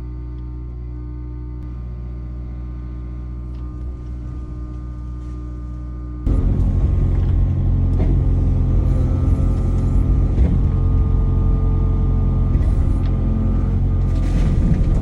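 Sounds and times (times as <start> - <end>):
diesel engine running: 1.6 - 15.0
metal clanks and scrapes: 12.6 - 15.0.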